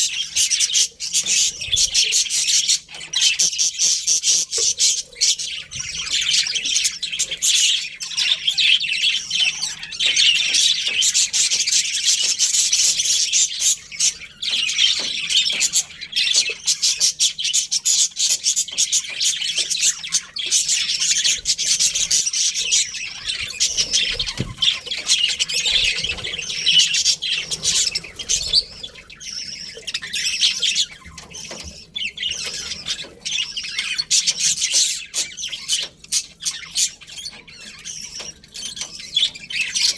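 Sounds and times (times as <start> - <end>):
bird squawks: 0.0 - 39.9
budgerigars chirping and chattering: 0.0 - 39.9.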